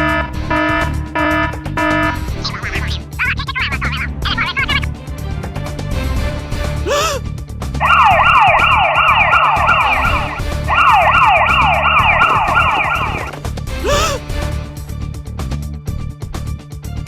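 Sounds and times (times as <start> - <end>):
siren rising whoop: 0.0 - 2.3, 7.8 - 13.4
police siren yelping: 0.0 - 2.5, 7.8 - 13.4
background music with low beat: 0.0 - 3.2, 7.5 - 13.7.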